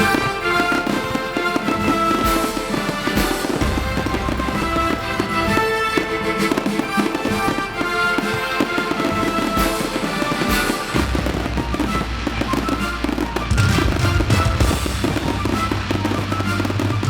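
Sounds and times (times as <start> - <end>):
fireworks banging: 0.0 - 17.0
music soundtrack: 0.0 - 17.0
deep bass: 3.6 - 5.6, 11.0 - 17.0.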